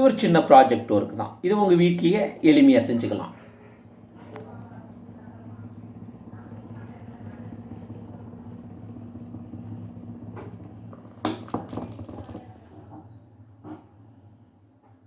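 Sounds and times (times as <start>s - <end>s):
small electric fan motor humming: 1.8s - 13.6s.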